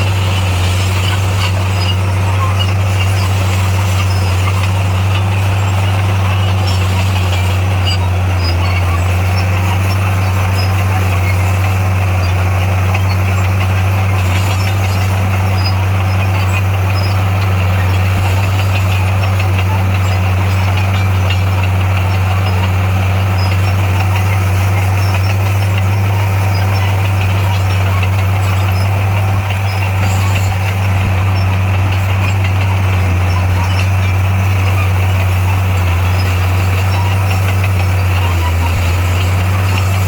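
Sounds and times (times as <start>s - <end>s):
heavy machine engine droning: 0.0s - 40.0s.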